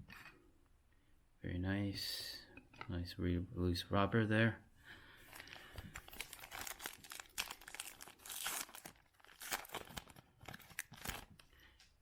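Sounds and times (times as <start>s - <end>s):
foil wrapper crinkling and rustling: 5.3s - 11.6s.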